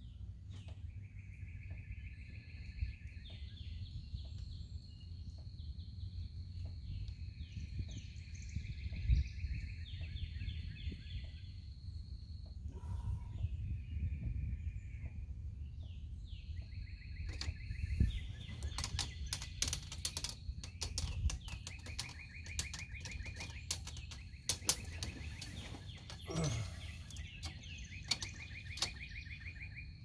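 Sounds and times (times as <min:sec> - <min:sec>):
birds chirping in trills: 0:06.9 - 0:30.0
tools clicking and tapping on wood: 0:17.3 - 0:29.3.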